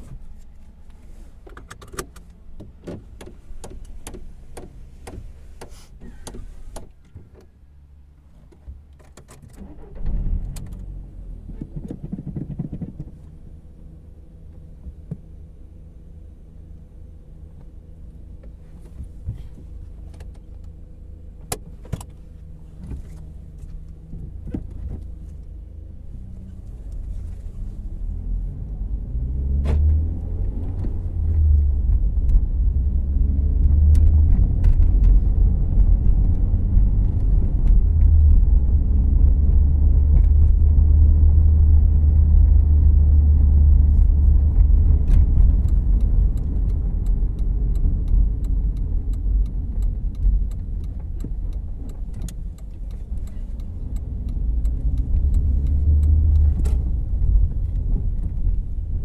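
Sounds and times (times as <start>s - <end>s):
car engine idling and pulling away: 0.0s - 59.0s
road rumble: 0.0s - 59.0s
sharp clicks: 44.2s - 58.5s.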